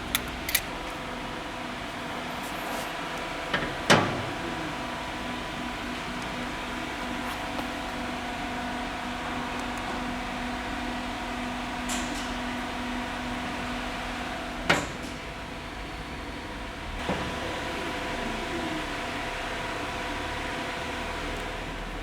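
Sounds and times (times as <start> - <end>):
machine hum: 0.0 - 14.7.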